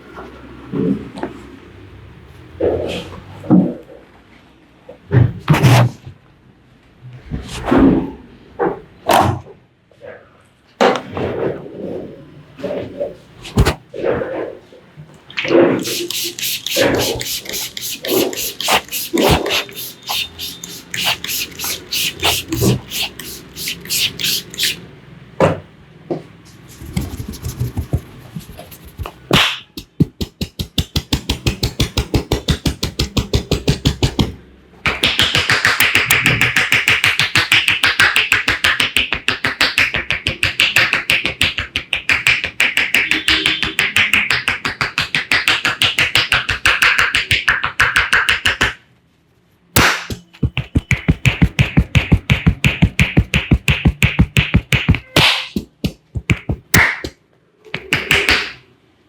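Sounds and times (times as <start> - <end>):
rapid hand strikes tapping: 15.8 - 24.8, 29.0 - 48.8, 49.8 - 57.2, 57.8 - 58.6.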